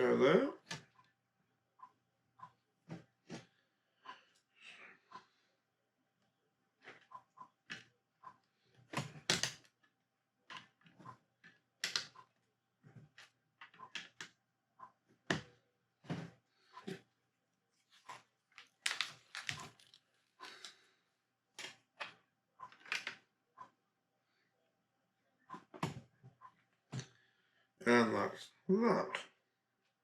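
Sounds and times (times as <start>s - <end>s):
plastic pieces clicking and clattering: 9.0s - 9.8s, 11.4s - 12.2s, 18.5s - 20.8s.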